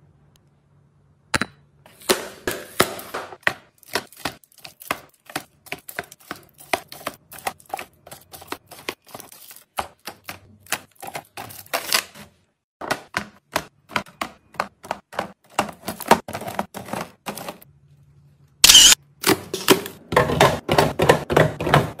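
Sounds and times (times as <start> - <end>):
household items clicking and tapping: 1.4 - 12.0, 12.8 - 17.7
items clattering: 1.9 - 17.7.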